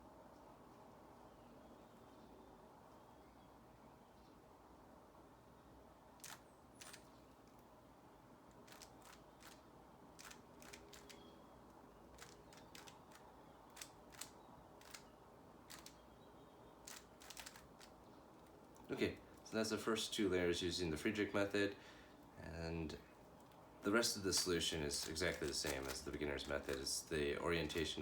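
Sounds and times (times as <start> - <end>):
puzzle cube plastic clicks: 6.2 - 7.2, 8.5 - 9.6, 10.2 - 11.2, 12.2 - 15.1, 15.7 - 16.0, 16.8 - 18.0, 23.4 - 28.0.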